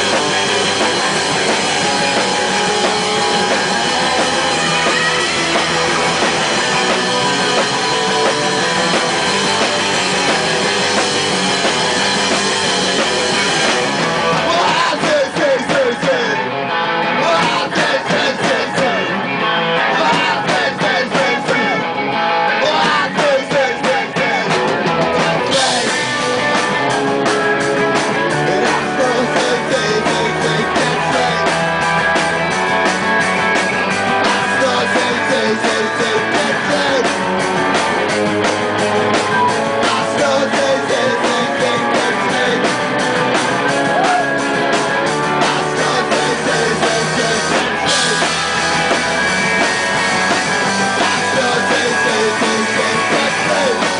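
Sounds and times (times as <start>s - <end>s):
live rock band playing: 0.0s - 53.9s.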